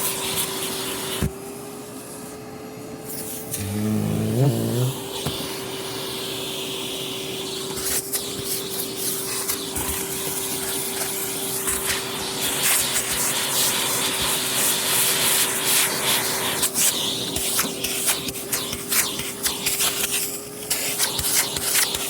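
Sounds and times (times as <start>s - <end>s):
vacuum cleaner running: 0.0s - 22.0s.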